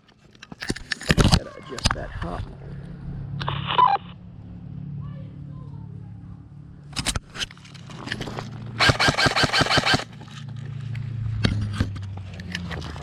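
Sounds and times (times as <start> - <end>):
airsoft gun clicks: 8.8 - 10.1
airsoft gun full-auto burst: 8.8 - 10.2.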